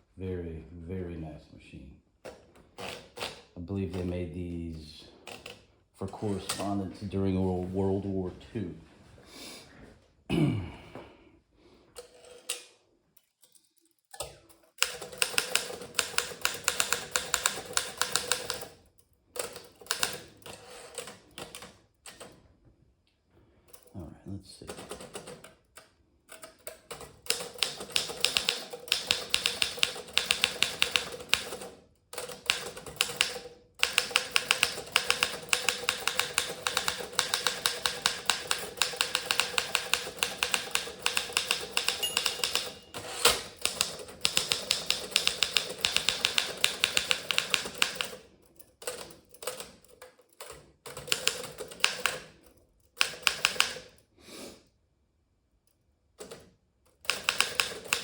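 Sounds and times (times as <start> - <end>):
typewriter key strikes: 27.0 - 31.6, 32.3 - 48.2, 57.1 - 58.0.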